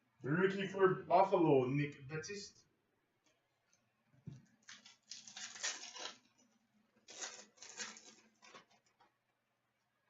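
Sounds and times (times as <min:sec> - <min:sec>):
foil wrapper tearing and crinkling: 0:04.6 - 0:09.0.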